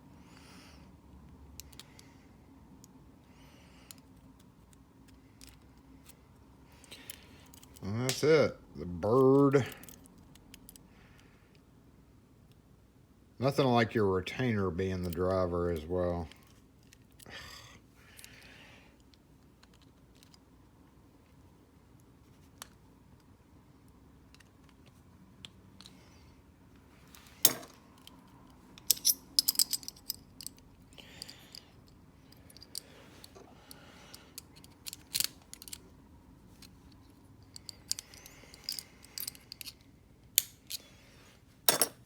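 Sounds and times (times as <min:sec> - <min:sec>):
metallic lock clicks: 0:34.4 - 0:35.8.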